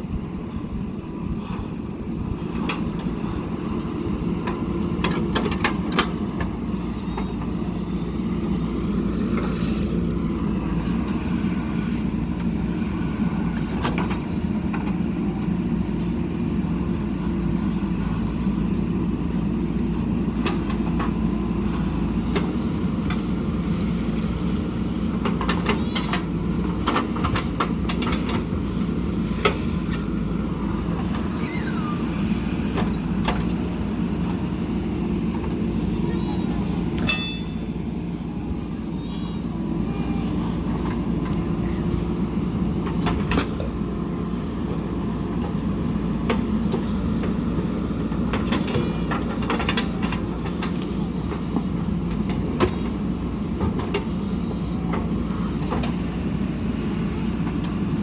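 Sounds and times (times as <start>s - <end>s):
diesel engine running: 0.0s - 58.0s
sharp knocks and clanks: 37.0s - 37.8s.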